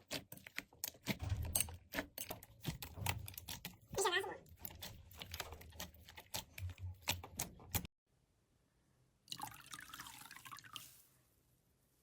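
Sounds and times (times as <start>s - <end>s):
wet squishing slime: 0.0s - 7.9s.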